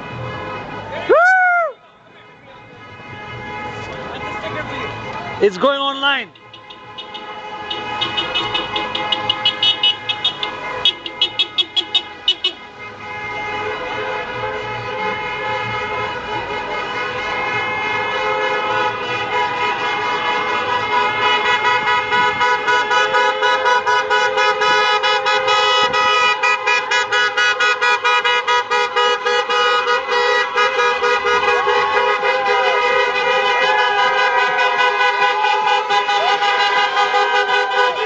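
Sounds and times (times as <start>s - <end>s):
many car horns honking: 0.0s - 1.1s, 1.8s - 38.0s.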